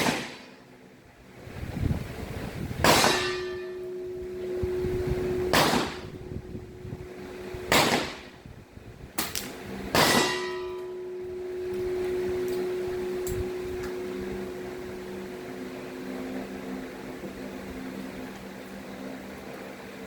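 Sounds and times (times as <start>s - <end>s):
airgun shots: 0.0s - 0.6s, 2.8s - 3.7s, 5.5s - 6.1s, 7.7s - 8.4s, 9.2s - 10.8s
steady low hum: 0.0s - 20.0s.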